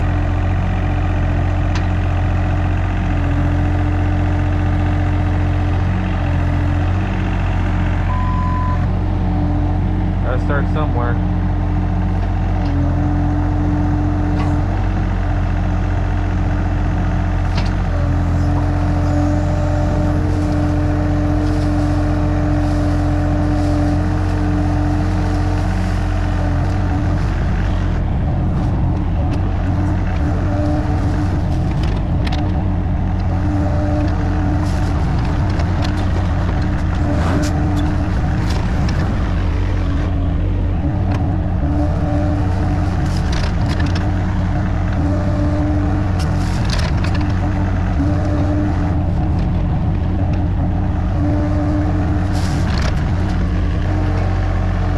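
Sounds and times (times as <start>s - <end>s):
excavator diesel engine running: 0.0s - 54.9s
held tone: 8.1s - 8.9s.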